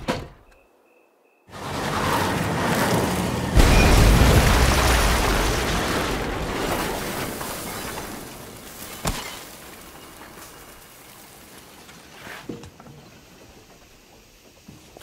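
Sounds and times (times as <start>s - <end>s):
crash rumble: 3.5s - 8.7s.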